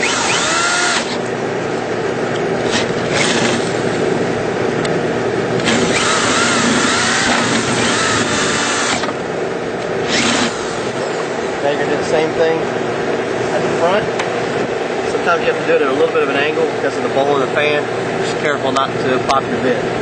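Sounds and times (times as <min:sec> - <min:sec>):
power drill drilling metal: 0:00.0 - 0:01.2, 0:02.7 - 0:03.8, 0:05.6 - 0:09.2, 0:10.0 - 0:11.2
steady engine-like hum: 0:00.0 - 0:20.0.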